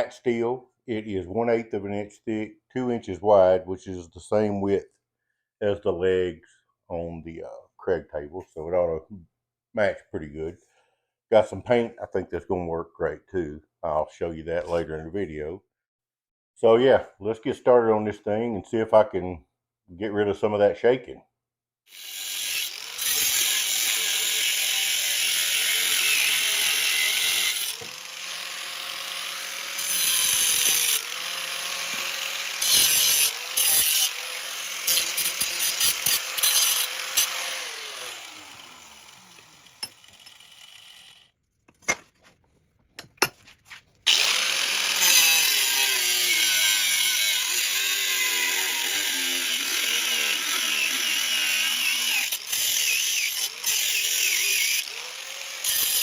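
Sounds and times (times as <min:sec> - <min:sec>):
power tool motor running: 0:21.9 - 0:41.2, 0:44.1 - 0:56.0.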